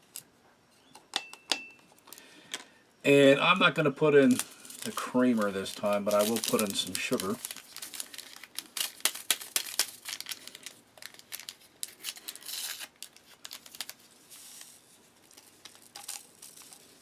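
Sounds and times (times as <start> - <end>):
paper packets tearing and crinkling: 4.2 - 17.0.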